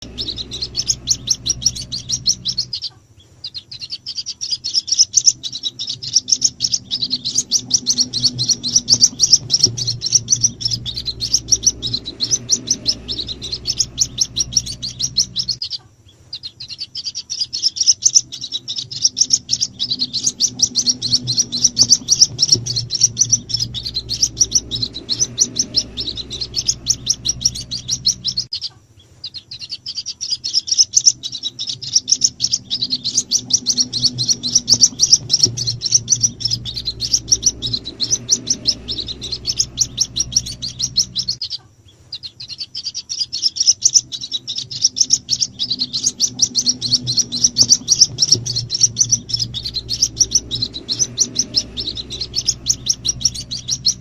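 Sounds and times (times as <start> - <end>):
chicks peeping: 0.0 - 54.0.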